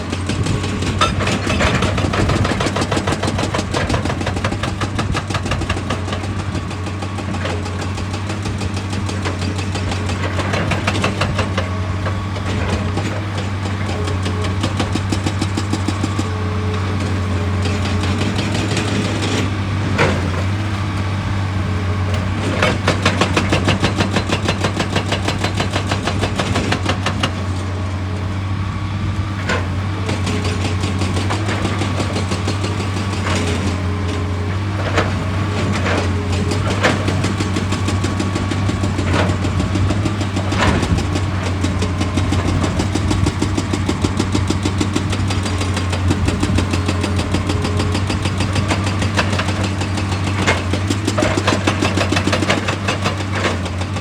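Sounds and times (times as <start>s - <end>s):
excavator diesel engine running: 0.0s - 54.0s.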